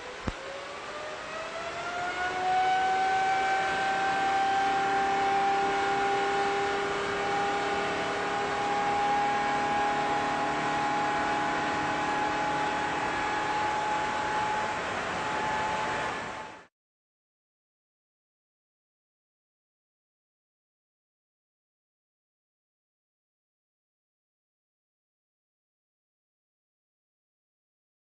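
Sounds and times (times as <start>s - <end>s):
jet engine whine rising: 0.0s - 16.7s
loud rush of air: 6.4s - 16.7s.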